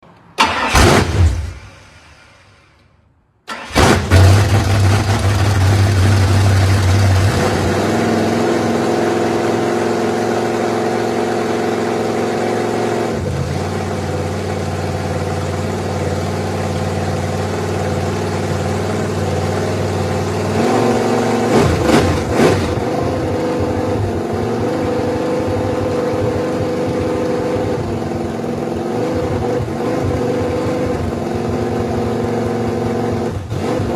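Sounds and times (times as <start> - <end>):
engine starting and idling: 0.4 - 2.8, 3.4 - 6.2
engine revving: 3.5 - 13.8, 20.2 - 33.9.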